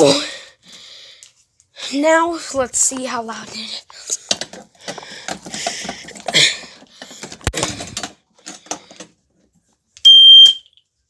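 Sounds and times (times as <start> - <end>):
handling clicks and rustling: 3.9 - 9.8
fire alarm horn: 10.0 - 10.8.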